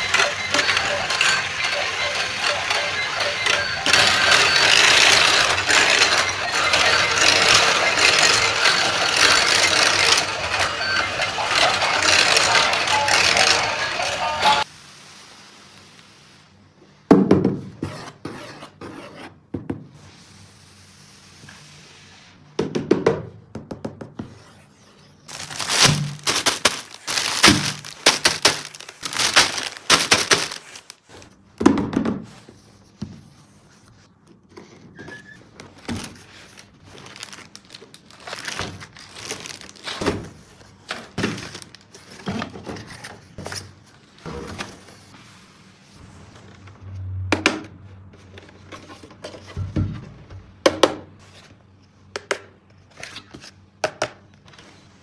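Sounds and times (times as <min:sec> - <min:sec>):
plastic toy track pieces clicking: 0:00.0 - 0:14.6.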